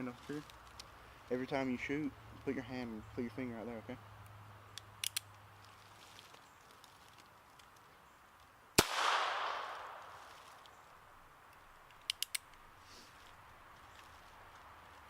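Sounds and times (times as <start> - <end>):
revolver gunshot: 8.8 - 10.2.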